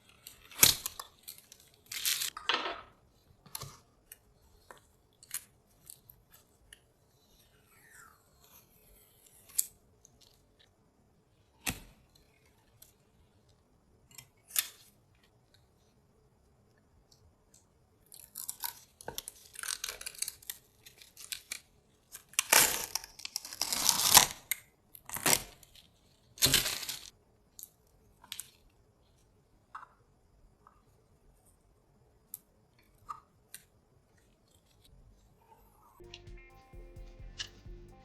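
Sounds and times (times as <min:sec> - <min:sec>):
packaging tearing and crinkling: 0:26.4 - 0:27.1.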